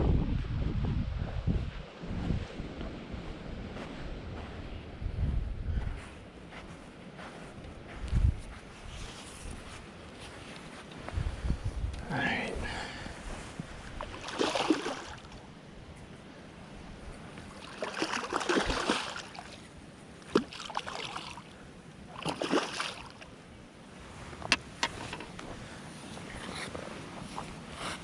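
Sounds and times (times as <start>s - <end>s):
water splashing and sloshing: 13.3s - 15.6s, 16.7s - 28.0s.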